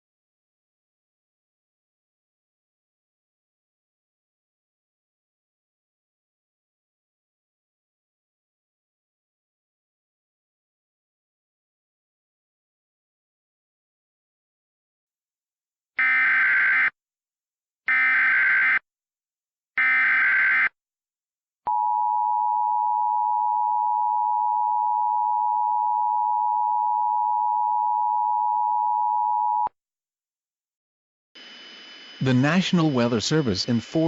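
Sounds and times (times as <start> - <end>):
buzzy digital data tones: 31.4 - 34.0.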